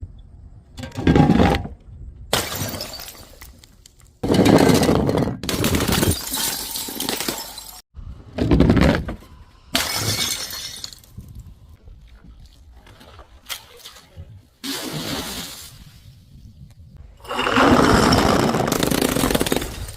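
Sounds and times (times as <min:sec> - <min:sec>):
glass bottles smashing: 0:02.3 - 0:03.5, 0:04.2 - 0:07.8, 0:09.8 - 0:11.1.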